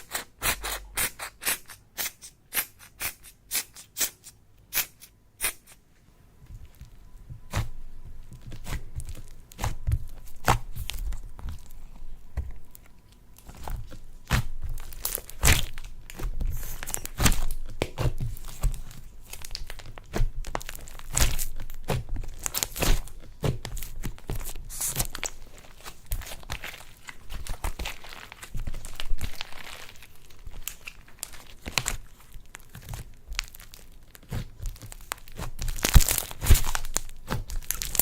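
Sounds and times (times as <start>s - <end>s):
slime squishing by hand: 0.0s - 38.0s.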